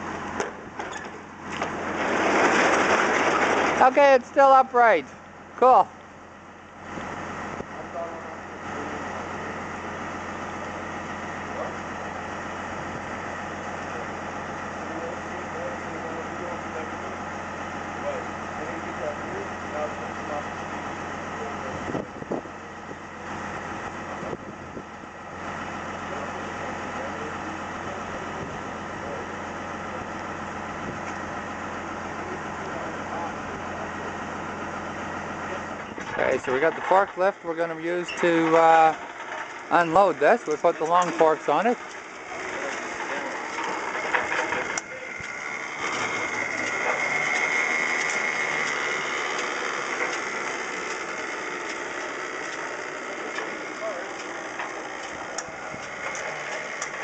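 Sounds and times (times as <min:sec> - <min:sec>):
vehicle engine idling: 0:00.0 - 0:02.0, 0:03.8 - 0:57.0
forklift whining: 0:00.0 - 0:57.0.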